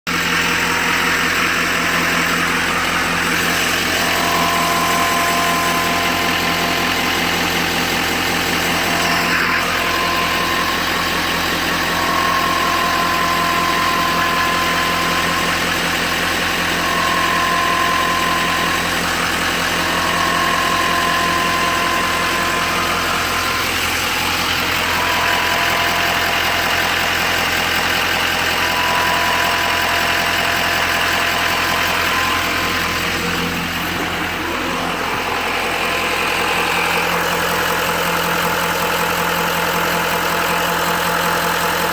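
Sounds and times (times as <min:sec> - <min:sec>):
diesel engine idling: 0:00.0 - 0:41.9
high wavering whine: 0:03.2 - 0:15.7.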